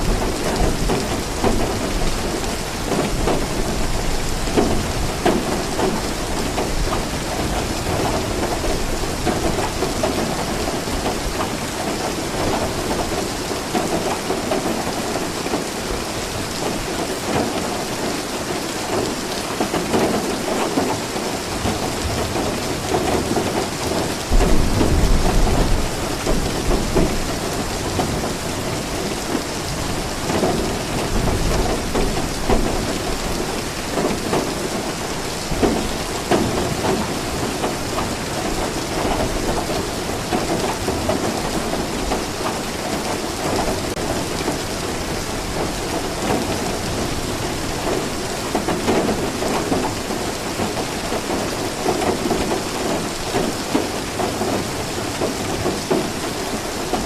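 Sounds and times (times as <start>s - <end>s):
rain falling: 0.0s - 57.0s
low rumble of thunder: 21.6s - 39.7s.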